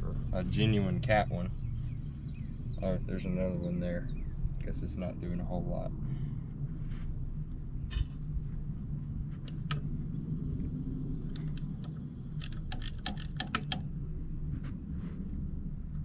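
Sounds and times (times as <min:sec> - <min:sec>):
steady low hum: 0:00.0 - 0:16.0
sharp clicks: 0:11.2 - 0:13.9
metal parts clinking: 0:11.4 - 0:13.8.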